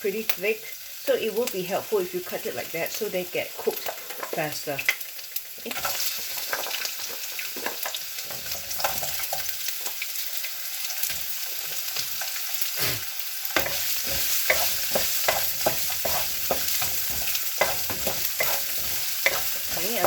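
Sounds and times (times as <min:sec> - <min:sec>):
vegetables sizzling in hot oil: 0:00.0 - 0:20.0
utensil scraping against pan: 0:13.6 - 0:20.0.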